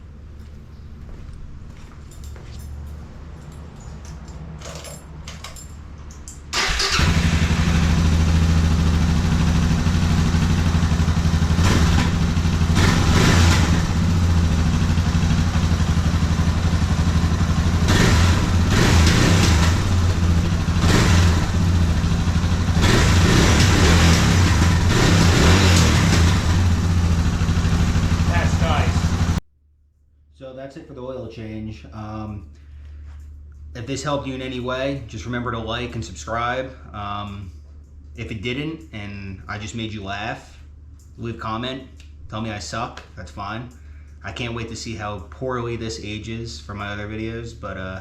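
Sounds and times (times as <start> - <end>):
motorcycle engine running: 7.0 - 29.4.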